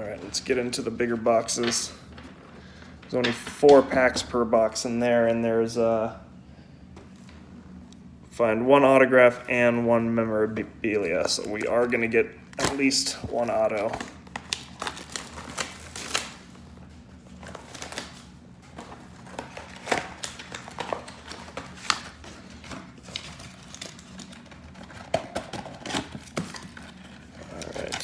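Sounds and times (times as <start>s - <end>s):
card packs being opened: 10.9s - 28.0s.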